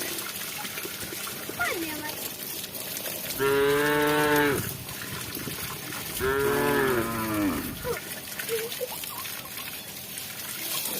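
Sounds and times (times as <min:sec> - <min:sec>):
cow mooing: 0:03.4 - 0:04.8, 0:06.1 - 0:08.0.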